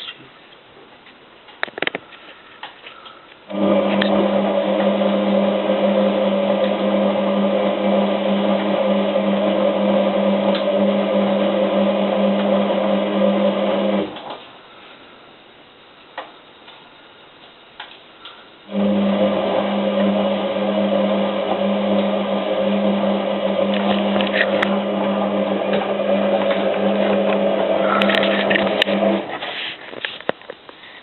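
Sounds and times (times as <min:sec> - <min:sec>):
washing machine motor humming: 0:03.5 - 0:14.3, 0:18.7 - 0:29.4.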